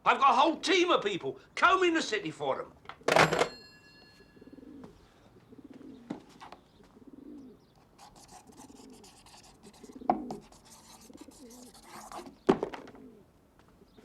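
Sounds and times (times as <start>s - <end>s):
pigeons cooing: 4.3s - 14.0s.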